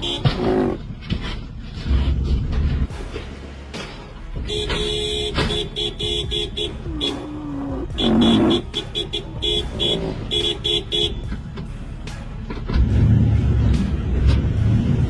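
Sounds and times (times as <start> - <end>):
vehicle horn tooting: 0.0 - 0.8, 4.4 - 11.4.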